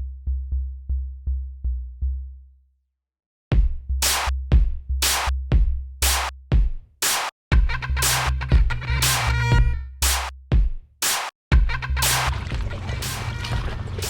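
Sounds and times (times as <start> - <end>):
electronic music with drum-machine beat: 3.5 - 14.0.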